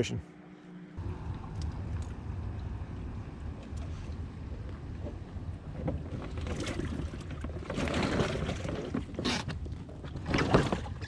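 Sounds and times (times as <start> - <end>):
steady low hum: 0.0 - 7.4.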